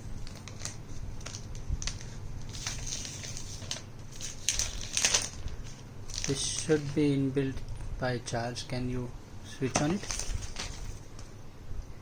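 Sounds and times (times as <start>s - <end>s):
low steady hum: 0.0s - 12.0s
packaging rustling: 0.2s - 7.0s, 9.7s - 11.2s.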